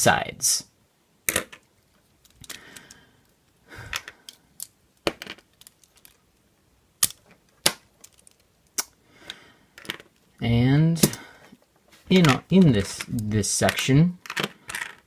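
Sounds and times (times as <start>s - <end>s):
plastic bricks clicking and snapping: 1.3s - 10.2s, 12.2s - 15.0s
plastic bricks rattling: 7.0s - 8.6s, 12.1s - 15.0s.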